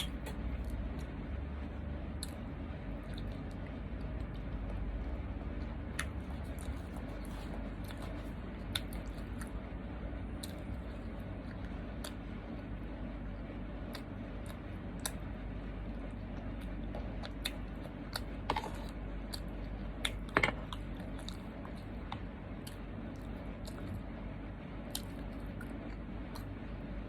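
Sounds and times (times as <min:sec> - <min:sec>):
person chewing food: 0:02.2 - 0:09.6, 0:10.4 - 0:12.6, 0:13.8 - 0:15.3, 0:16.1 - 0:24.1, 0:24.8 - 0:26.8.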